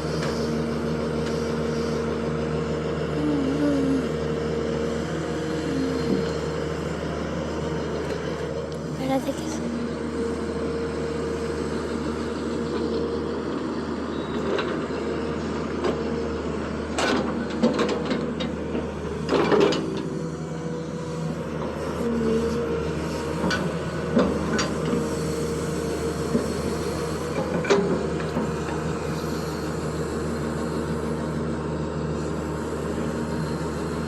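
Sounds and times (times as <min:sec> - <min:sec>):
constant whine: 0:00.0 - 0:34.0
excavator diesel engine running: 0:00.0 - 0:34.0.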